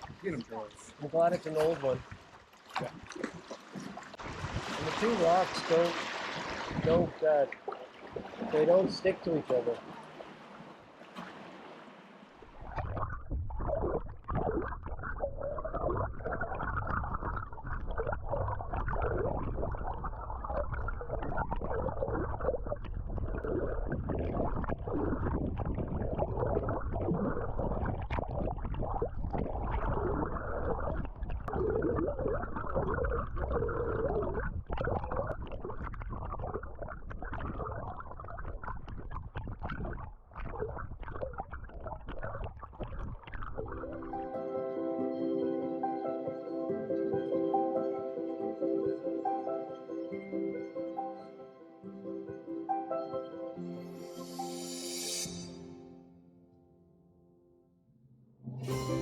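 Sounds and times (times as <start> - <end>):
rumbling gurgle of water: 0.0 - 44.4.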